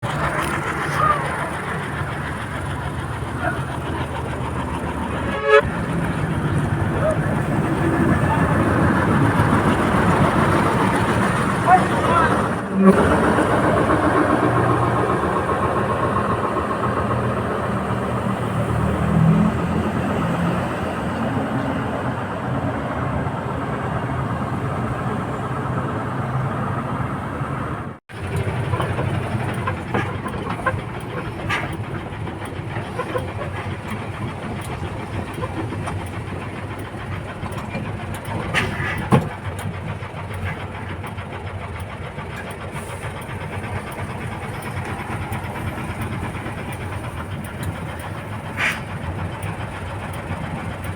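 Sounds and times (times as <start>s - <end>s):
diesel engine running: 0.0s - 50.9s
metallic knocks and clanks: 28.3s - 41.2s.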